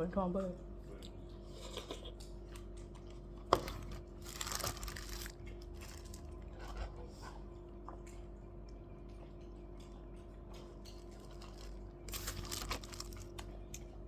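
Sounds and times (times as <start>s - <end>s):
faint steady hum: 0.0s - 14.0s
person crunching food: 1.3s - 6.9s, 10.8s - 14.0s.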